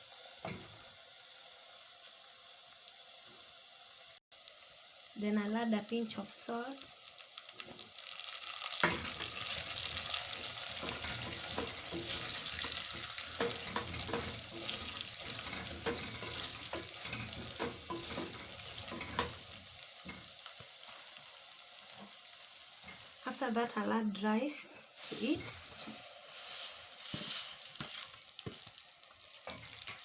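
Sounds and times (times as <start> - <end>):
meat sizzling in a pot: 0.0 - 30.0
spoon scraping a pot: 9.0 - 19.4.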